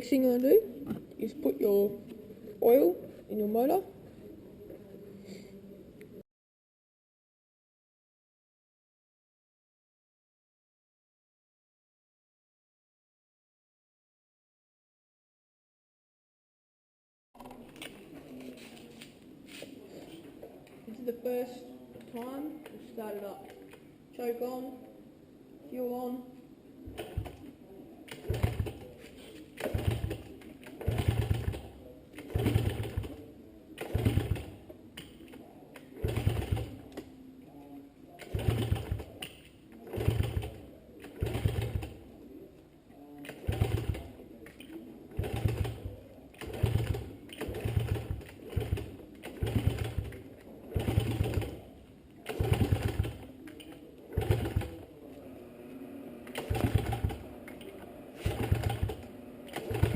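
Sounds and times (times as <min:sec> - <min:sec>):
motorcycle engine kick-starting: 0:28.1 - 0:28.8, 0:29.6 - 0:33.2, 0:33.8 - 0:34.5, 0:36.0 - 0:36.8, 0:38.3 - 0:39.1, 0:39.9 - 0:42.0, 0:43.4 - 0:44.0, 0:45.2 - 0:45.8, 0:46.4 - 0:51.5, 0:52.3 - 0:53.2, 0:54.1 - 0:54.8, 0:56.2 - 0:57.5, 0:58.1 - 0:59.9.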